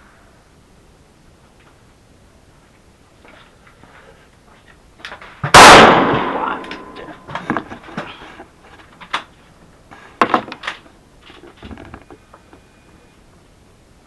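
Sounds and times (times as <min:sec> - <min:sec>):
rifle shot: 0:05.4 - 0:07.3.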